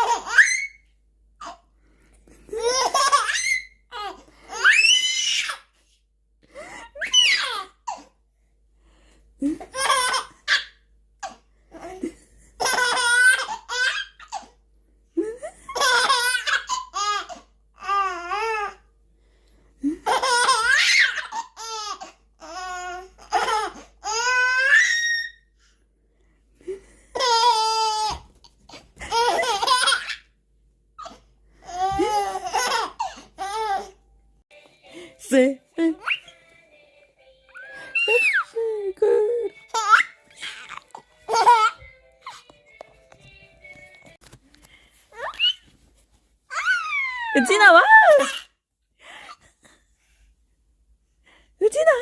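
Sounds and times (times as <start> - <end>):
baby laughing and squealing: 0.0 - 0.8, 2.5 - 5.7, 6.9 - 8.1, 9.6 - 10.8, 12.6 - 14.5, 15.7 - 18.7, 20.0 - 25.4, 27.1 - 28.2, 29.0 - 30.3, 31.0 - 33.9, 36.0 - 36.4, 37.6 - 42.4, 45.1 - 45.7, 46.5 - 48.5.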